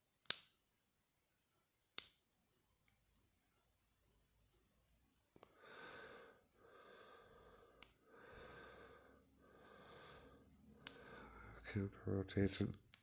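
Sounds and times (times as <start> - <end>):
lock-picking tools clicking: 0.2 - 0.6, 2.0 - 3.2, 10.8 - 11.2, 12.7 - 13.0
slow breathing: 5.4 - 11.8.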